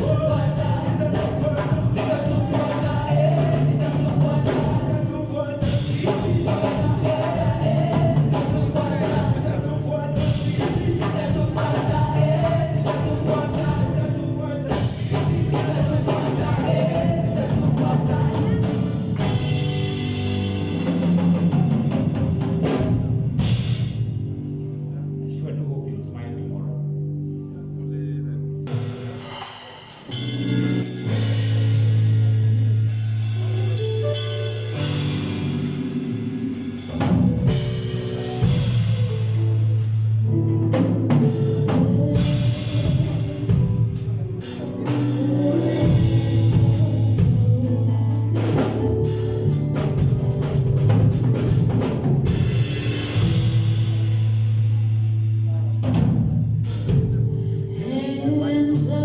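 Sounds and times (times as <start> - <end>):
faint singing: 0.0 - 21.9, 35.2 - 50.6, 56.7 - 59.0
drum kit playing: 0.0 - 24.5, 28.7 - 59.0
long held bass notes: 0.0 - 29.4, 30.1 - 59.0.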